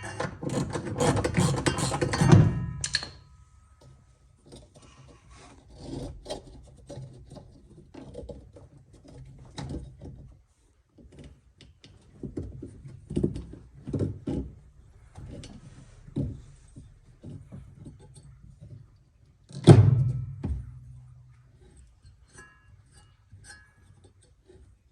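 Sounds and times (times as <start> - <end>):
knocks and clunks of tools: 0.0 - 4.7
heavy thunk: 19.7 - 20.8.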